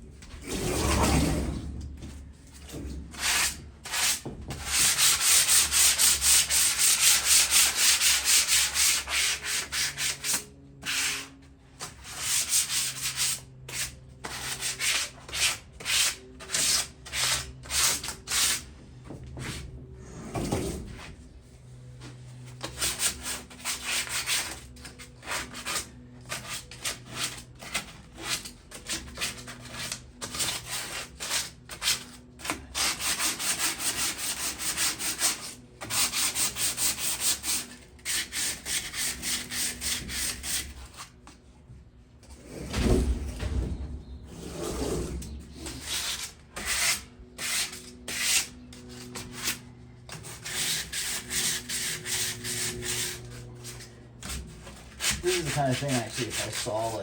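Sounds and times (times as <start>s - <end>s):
sandpaper rubbing on metal: 55.0s - 57.0s.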